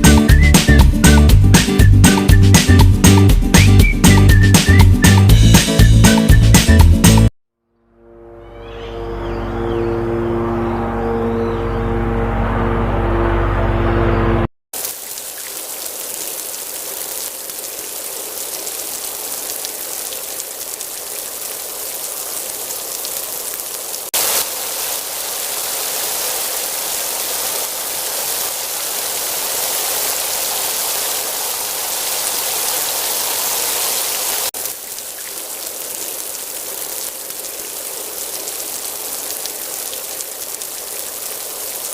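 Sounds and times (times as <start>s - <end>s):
rain-like hiss: 14.8s - 41.9s.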